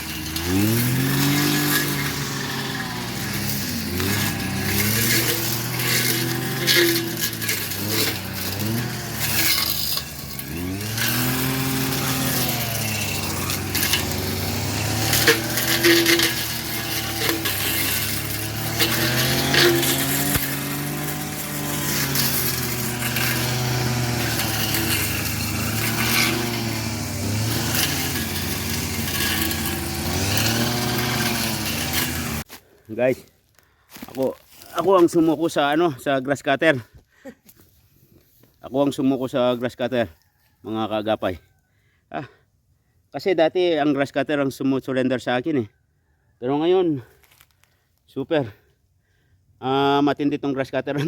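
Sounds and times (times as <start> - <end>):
brush cutter engine running: 0.0 - 32.5.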